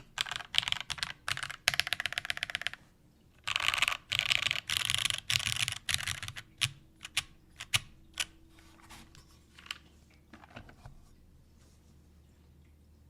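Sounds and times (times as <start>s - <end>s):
mechanical keyboard typing: 0.0s - 2.8s, 3.4s - 8.4s.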